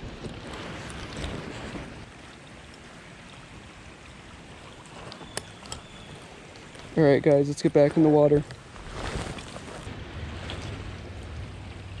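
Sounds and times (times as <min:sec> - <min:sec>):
creek water running: 0:00.0 - 0:12.0.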